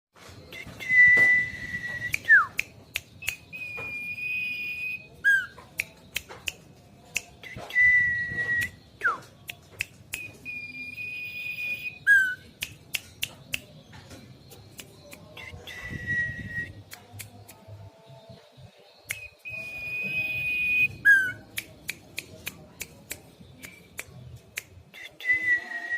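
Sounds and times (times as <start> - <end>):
songbird singing raspy song: 0.2 - 25.9
sharp clicks: 19.1 - 19.8.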